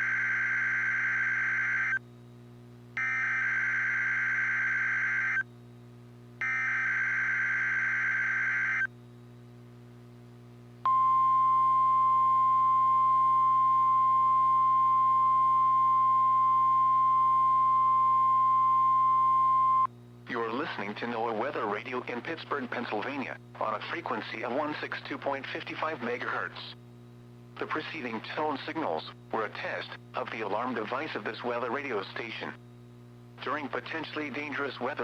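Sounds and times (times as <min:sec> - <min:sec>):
steady warning alarm tone: 0:00.0 - 0:02.0, 0:03.0 - 0:05.4, 0:06.4 - 0:08.9.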